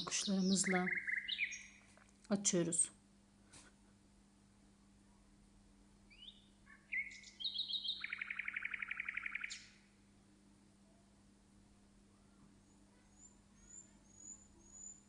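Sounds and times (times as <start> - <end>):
songbird chirps and trill: 0.0 - 1.9, 6.1 - 10.0, 12.1 - 15.0
faint low hum: 0.0 - 7.4, 9.6 - 15.0.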